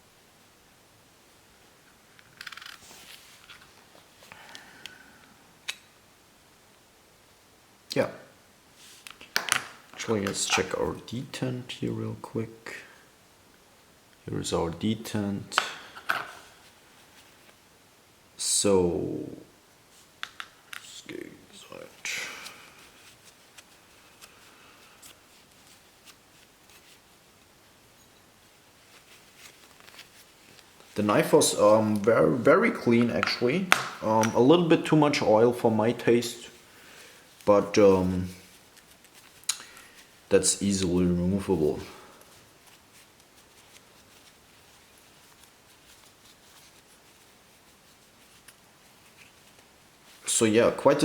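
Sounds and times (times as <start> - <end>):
metal knife parts rubbing: 10.3 - 10.8.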